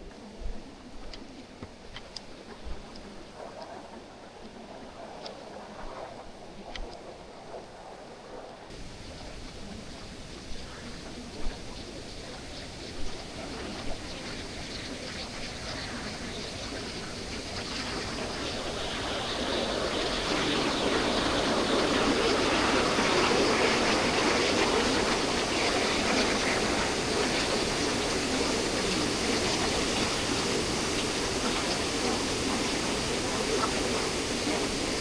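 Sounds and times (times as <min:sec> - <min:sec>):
waterfall rushing: 0:23.1 - 0:35.0.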